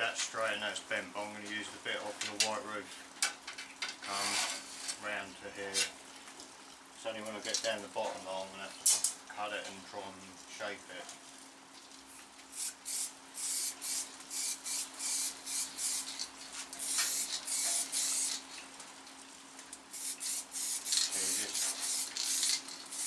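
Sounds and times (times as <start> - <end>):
aerosol spray hissing: 12.6 - 16.2, 16.8 - 18.4, 20.0 - 23.0.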